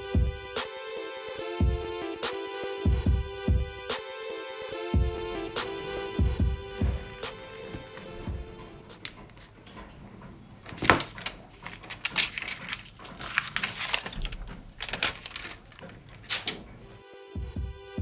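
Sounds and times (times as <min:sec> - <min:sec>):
packaging rustling: 0:06.7 - 0:09.9, 0:10.6 - 0:17.0
handling clicks: 0:06.8 - 0:08.2.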